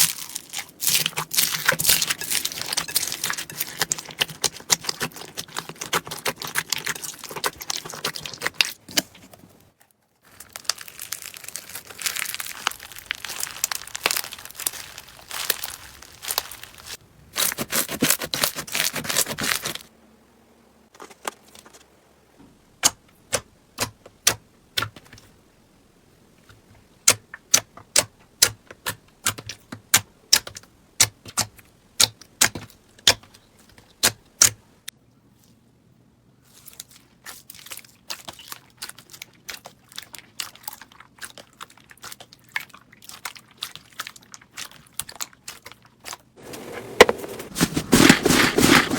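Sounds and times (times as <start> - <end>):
slime crackling and crunching: 0.0 - 9.1, 9.8 - 19.9, 36.5 - 48.9
slime popping: 10.3 - 17.0.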